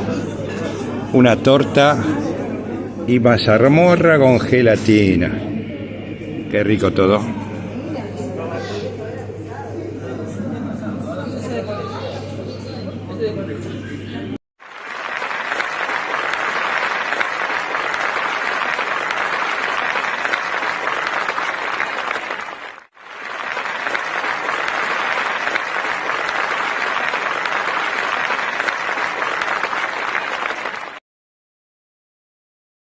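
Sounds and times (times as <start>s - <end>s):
crowd applauding: 14.6s - 31.0s.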